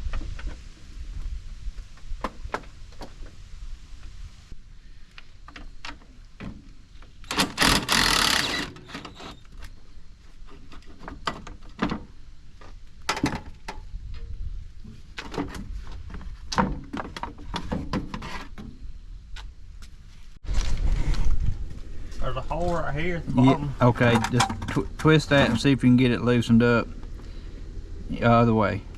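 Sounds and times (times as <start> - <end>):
wind rumbling on microphone: 0.0 - 4.7, 13.5 - 16.6, 20.4 - 23.8.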